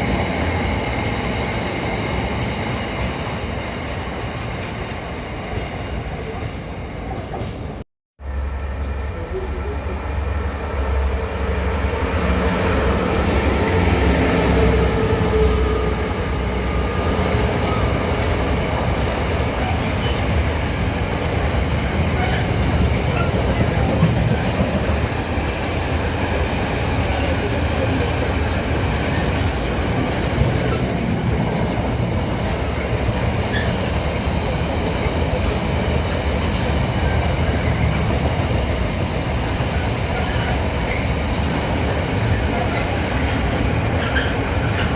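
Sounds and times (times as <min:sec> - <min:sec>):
train wheels rumbling on rail: 0:00.0 - 0:44.9
high-pitched wheel squeal: 0:28.4 - 0:32.8.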